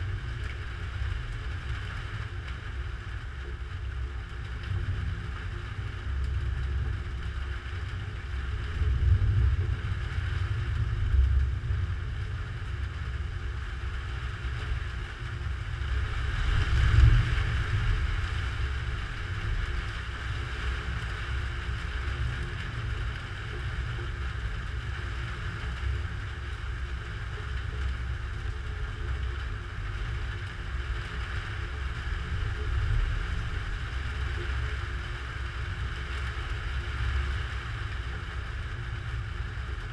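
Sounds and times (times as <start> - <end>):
steady hiss: 0.0 - 39.9
thunder rumbling: 15.8 - 22.2.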